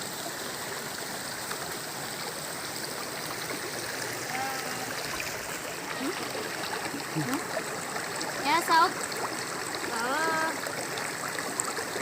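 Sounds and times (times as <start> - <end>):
stream water rushing: 0.0 - 12.0.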